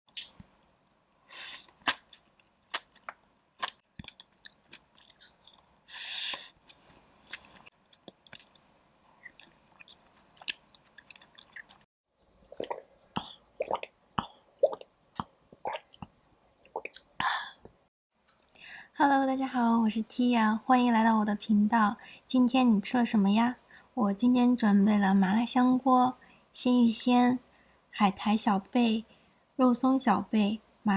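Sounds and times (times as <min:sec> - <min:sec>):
chewing with crisp crunches: 0:01.6 - 0:05.8, 0:06.6 - 0:16.1.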